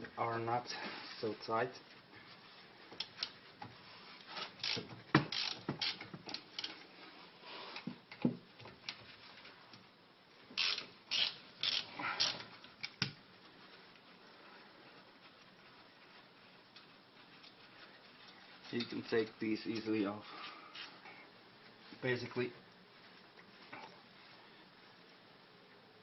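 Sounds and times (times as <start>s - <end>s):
ratchet wrench clicking: 4.6s - 6.8s, 10.6s - 12.4s.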